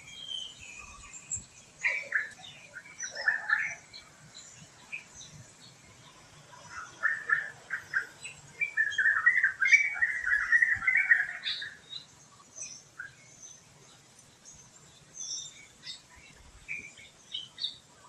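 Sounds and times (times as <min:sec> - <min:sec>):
high bird chirps: 0:00.0 - 0:13.4.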